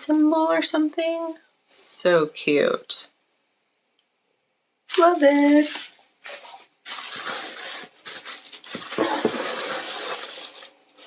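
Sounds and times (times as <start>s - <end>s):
paper or plastic rustling: 4.9s - 11.0s.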